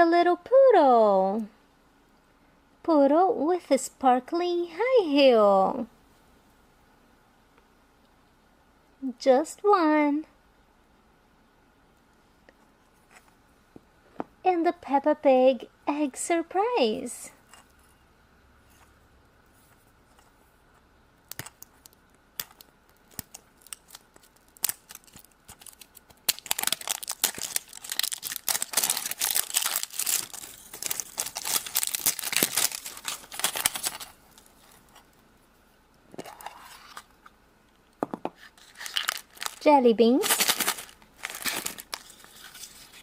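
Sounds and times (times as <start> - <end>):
wrapper tearing and crinkling: 21.3 - 35.1, 38.6 - 43.0.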